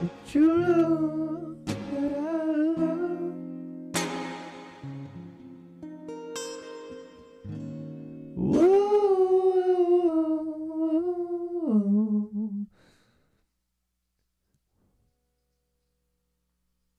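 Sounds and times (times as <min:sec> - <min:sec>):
guitar chord: 0:00.0 - 0:10.2
person humming long note: 0:08.4 - 0:12.8.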